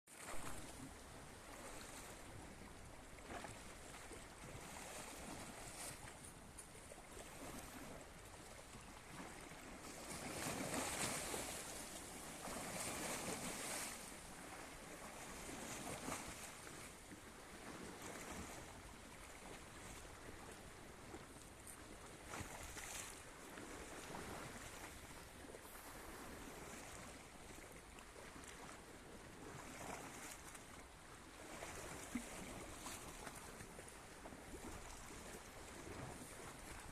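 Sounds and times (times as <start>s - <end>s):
sea waves washing: 3.7s - 16.8s, 25.6s - 27.5s.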